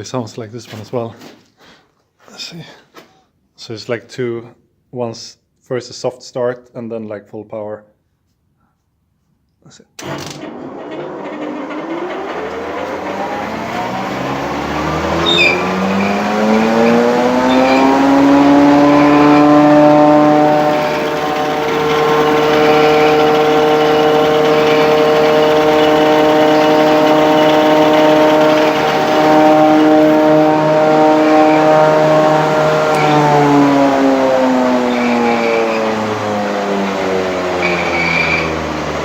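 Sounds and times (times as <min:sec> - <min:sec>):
thickness planer starting up: 0:10.0 - 0:39.0.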